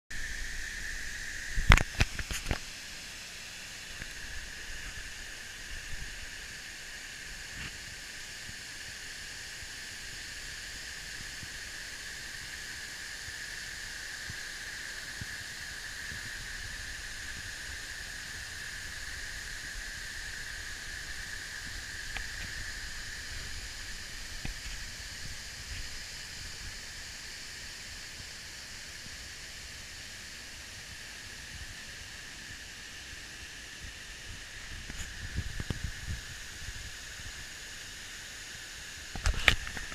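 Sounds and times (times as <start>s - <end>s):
steady high-pitched tone: 0.1s - 7.7s.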